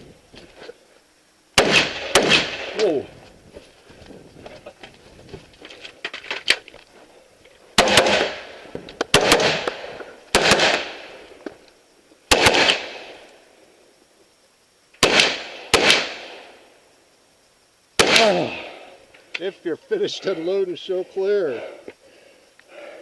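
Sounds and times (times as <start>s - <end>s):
rifle shots with echo: 1.6s - 2.9s, 7.8s - 11.2s, 12.3s - 13.2s, 15.0s - 16.6s, 18.0s - 18.6s.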